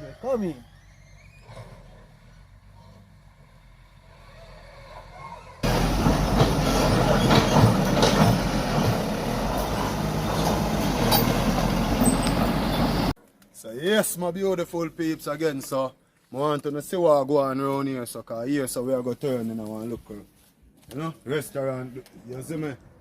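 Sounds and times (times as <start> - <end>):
mechanical rumble with clanks: 5.6 - 13.1.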